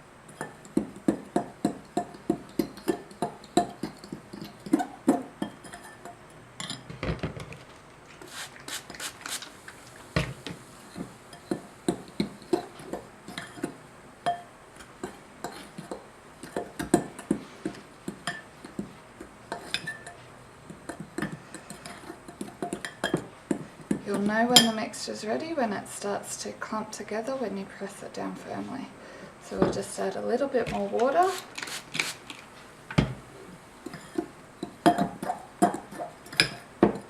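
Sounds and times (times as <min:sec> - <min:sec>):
spoon scraping a mixing bowl: 0:14.9 - 0:17.4, 0:19.5 - 0:23.2, 0:33.8 - 0:36.6.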